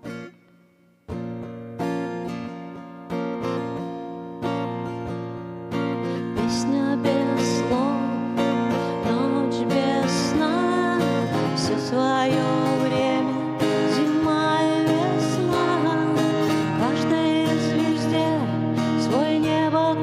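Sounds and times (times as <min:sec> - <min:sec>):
acoustic guitar strumming chords: 0:00.0 - 0:20.0.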